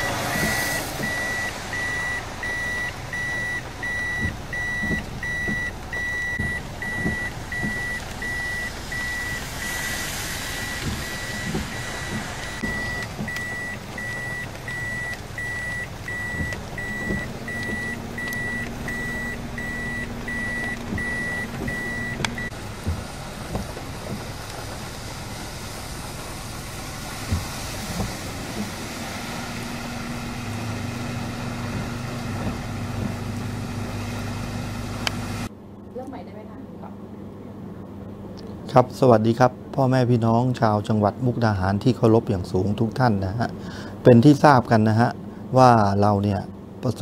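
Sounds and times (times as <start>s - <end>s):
vehicle reversing alarm beeping: 0.0s - 23.2s
low engine hum: 0.0s - 35.8s.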